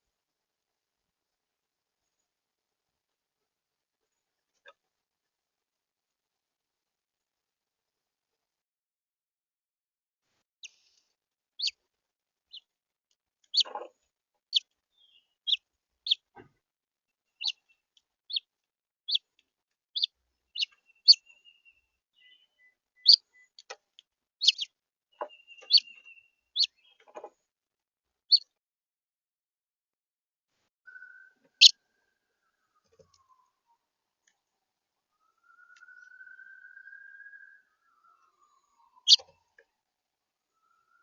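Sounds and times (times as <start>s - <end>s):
finch chirp calls: 13.5s - 13.9s, 17.4s - 18.5s, 20.0s - 23.7s, 24.4s - 27.1s, 35.5s - 39.4s.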